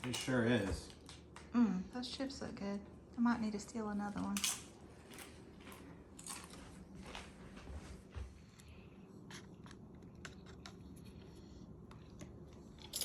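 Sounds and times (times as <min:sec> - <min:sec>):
person crunching chips: 0:06.1 - 0:06.7.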